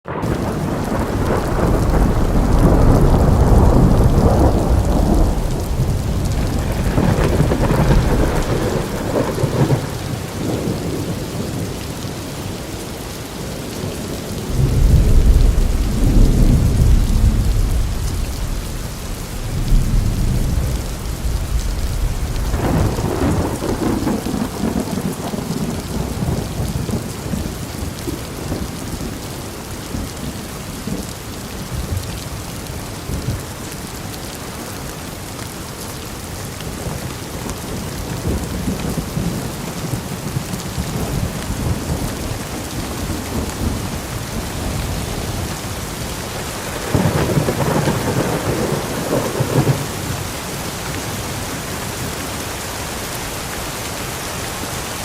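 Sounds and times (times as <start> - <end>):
steady rainfall: 0.0 - 55.0
low rumbles of thunder: 0.1 - 11.9, 13.7 - 30.3, 36.8 - 51.2.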